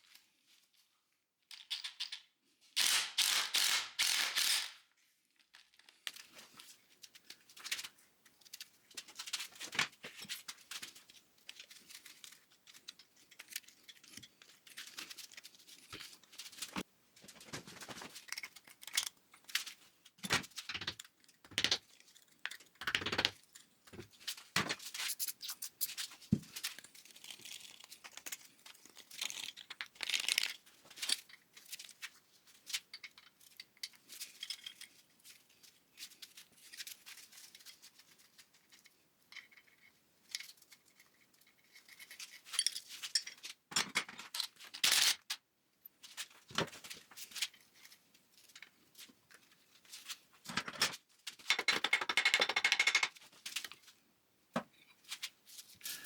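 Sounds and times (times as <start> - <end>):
metal parts clinking and scraping: 32.9 - 35.1, 39.3 - 45.2.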